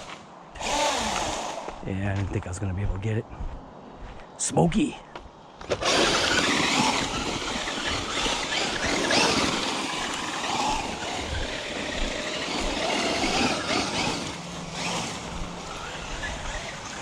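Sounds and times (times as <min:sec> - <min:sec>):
electric motor whine: 0:00.0 - 0:01.8, 0:05.6 - 0:17.0.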